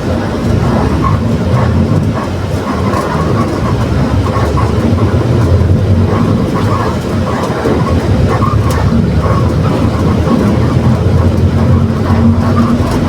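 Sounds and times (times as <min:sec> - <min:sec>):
bus diesel engine droning: 0:00.0 - 0:13.0
differential growling: 0:00.5 - 0:13.0.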